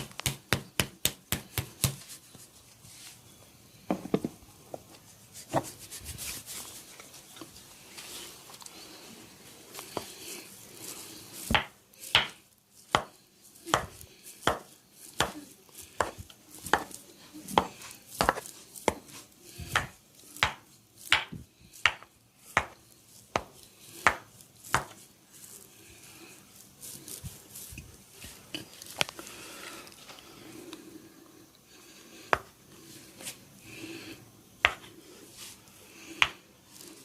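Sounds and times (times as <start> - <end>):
hands slapping body: 0.0 - 2.1, 11.5 - 13.1, 19.7 - 22.8
soft rubbing and rustling: 1.6 - 3.4, 4.8 - 33.6, 34.6 - 35.9.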